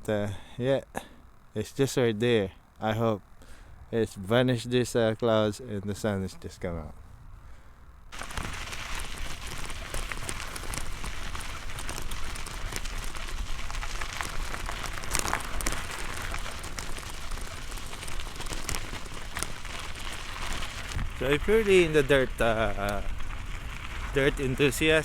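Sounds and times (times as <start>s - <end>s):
bike tyres crunching on gravel: 5.3s - 25.0s.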